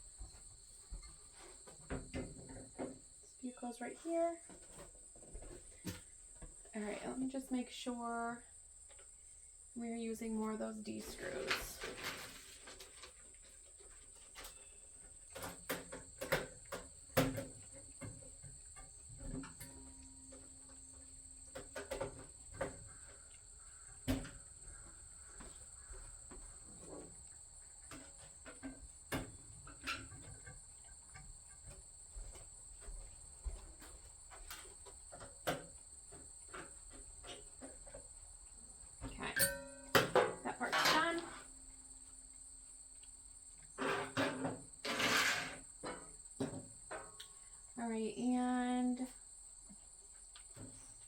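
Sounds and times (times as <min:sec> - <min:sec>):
faint high-pitched tone: 0:39.2 - 0:41.5.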